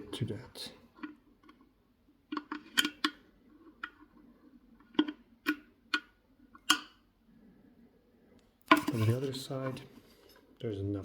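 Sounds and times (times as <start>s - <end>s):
small hard parts clicking and tapping: 4.8s - 7.0s.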